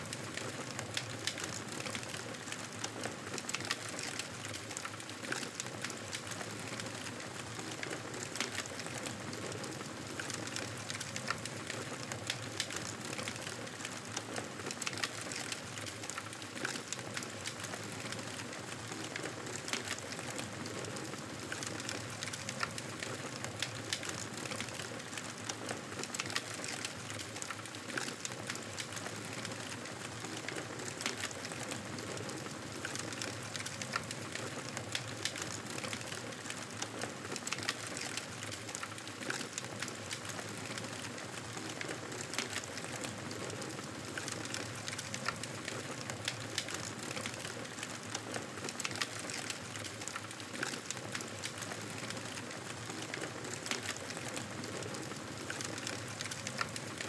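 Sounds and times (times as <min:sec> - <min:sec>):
campfire crackling and popping: 0:26.1 - 0:57.0.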